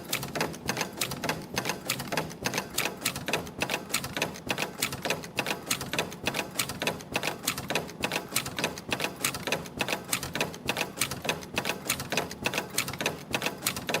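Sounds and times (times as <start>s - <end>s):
spring machine clattering clicks: 0.0s - 14.0s.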